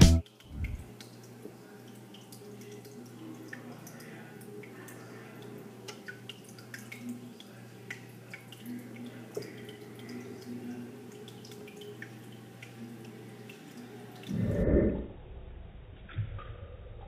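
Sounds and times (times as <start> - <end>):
steady low hum: 0.0 - 0.9, 14.2 - 16.0
water dripping and splashing: 0.2 - 14.3.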